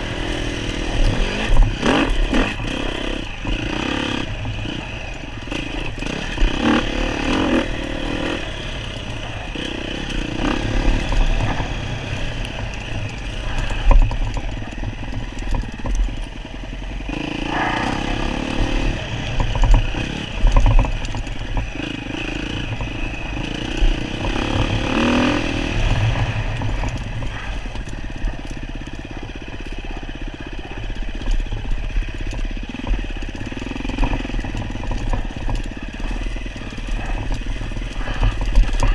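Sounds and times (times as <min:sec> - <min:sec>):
dirt bike engine revving: 0:00.0 - 0:38.9.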